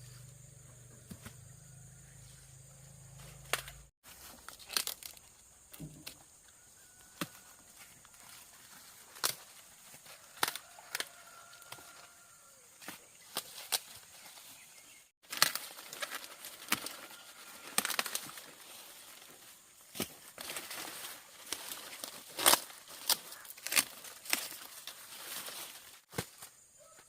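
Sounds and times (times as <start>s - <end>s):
dry plants snapping and crackling: 3.5s - 6.2s, 7.1s - 12.0s, 12.8s - 14.2s, 15.2s - 26.5s.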